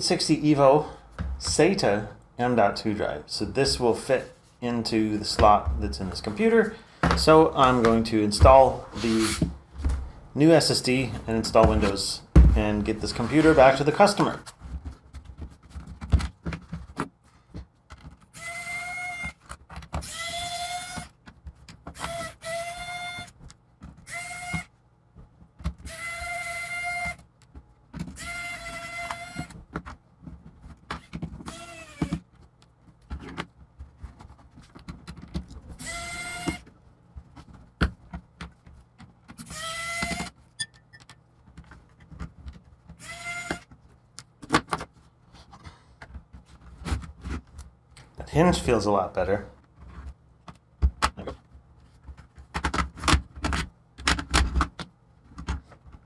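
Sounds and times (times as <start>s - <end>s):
electric screwdriver whirring: 22.0s - 23.2s, 28.2s - 29.5s, 31.5s - 32.2s, 35.8s - 36.6s, 43.0s - 43.6s.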